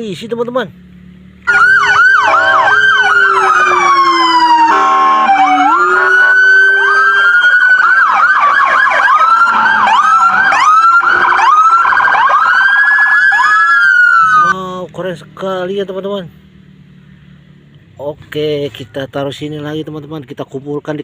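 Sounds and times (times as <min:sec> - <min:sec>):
police sirens wailing and yelping: 0:01.4 - 0:14.6
buzzing horn blast: 0:04.4 - 0:07.3, 0:09.3 - 0:11.4.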